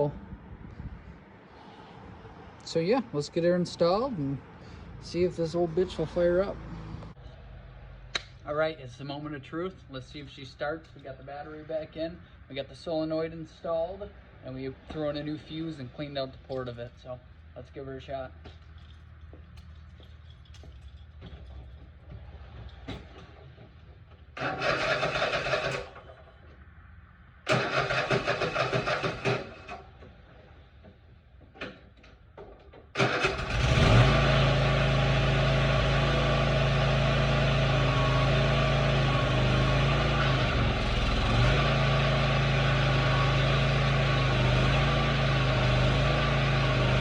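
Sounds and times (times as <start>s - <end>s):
mower engine running: 24.4s - 26.1s, 33.0s - 47.0s
electric starter cranking engine: 24.4s - 26.2s, 27.5s - 29.9s, 33.0s - 47.0s.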